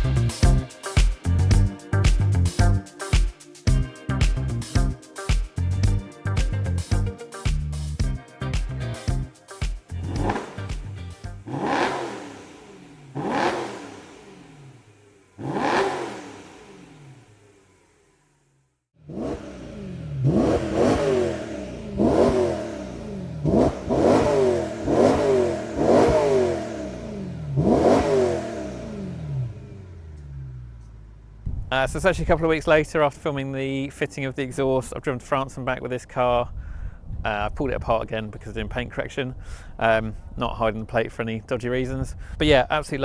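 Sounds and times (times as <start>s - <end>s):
car engine revving: 9.9s - 33.3s.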